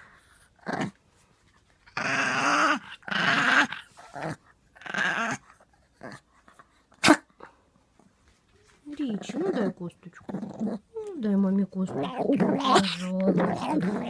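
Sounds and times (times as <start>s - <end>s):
small dog growling: 0.6s - 1.0s, 1.9s - 6.3s, 9.2s - 11.2s, 11.8s - 14.0s.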